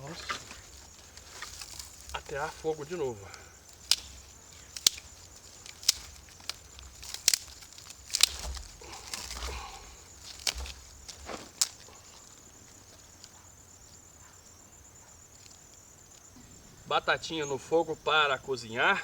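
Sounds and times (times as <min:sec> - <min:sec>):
sticks cracking and crunching: 0:00.0 - 0:14.0
insect chirring: 0:00.0 - 0:19.0.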